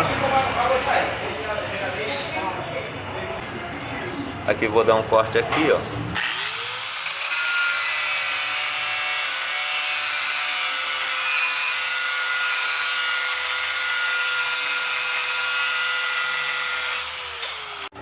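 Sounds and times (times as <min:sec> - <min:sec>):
power tool cutting metal: 0:06.1 - 0:18.0.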